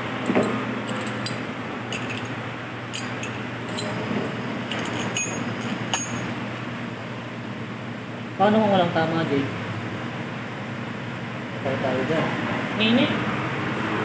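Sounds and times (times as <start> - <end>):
fan-like hum: 0.0 - 14.0
metal tools clinking: 0.2 - 6.4.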